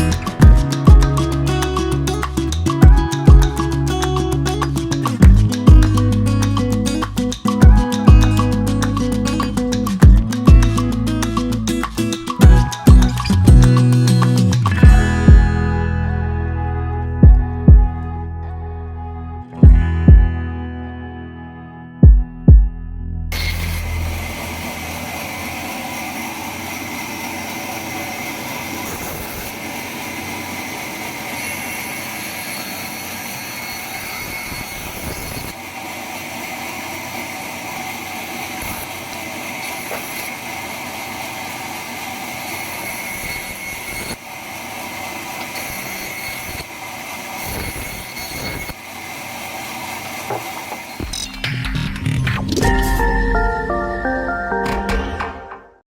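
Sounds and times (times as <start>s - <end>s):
sawmill saw whining: 23.3s - 53.5s.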